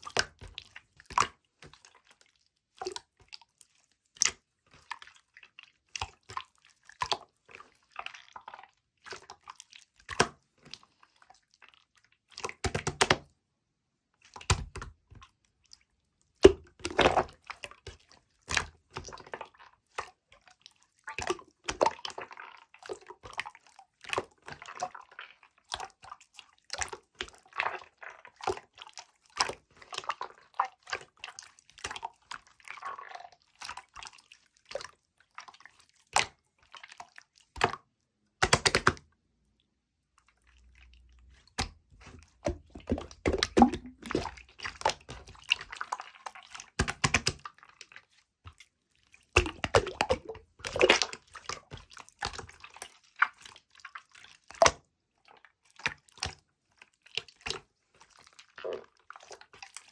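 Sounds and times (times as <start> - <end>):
wet drips: 40.2 - 59.9.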